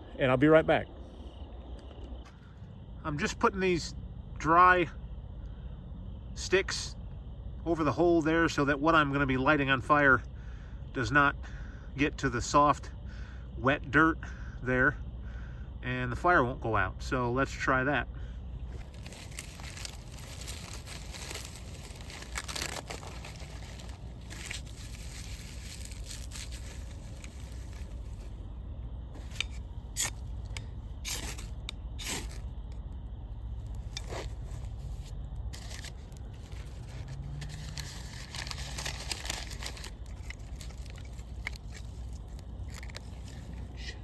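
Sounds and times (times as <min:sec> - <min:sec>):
rustling and scraping of tinder: 0:18.7 - 0:28.4, 0:29.1 - 0:32.6, 0:33.6 - 0:43.8.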